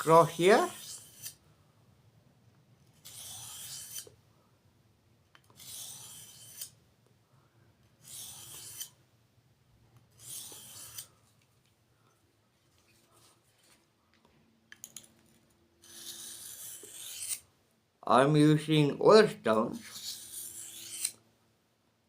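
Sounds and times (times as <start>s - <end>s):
blade hissing on sharpening stone: 0.7s - 1.4s, 3.0s - 4.1s, 5.6s - 6.8s, 8.0s - 9.0s, 10.2s - 11.1s, 15.8s - 17.4s, 19.9s - 21.2s.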